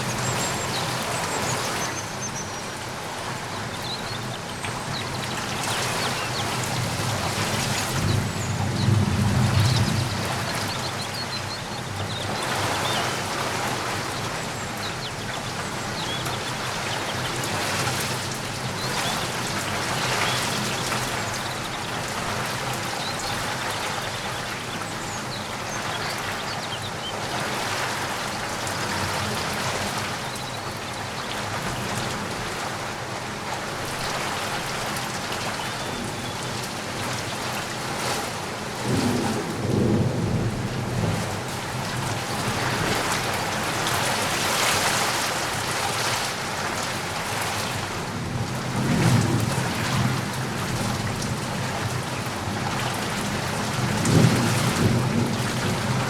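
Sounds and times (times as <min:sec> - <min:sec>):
rain falling: 0:00.0 - 0:56.0.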